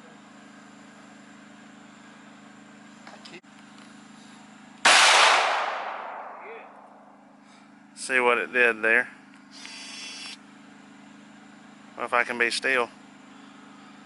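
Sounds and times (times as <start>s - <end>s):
pistol shot with echo: 4.8s - 6.6s.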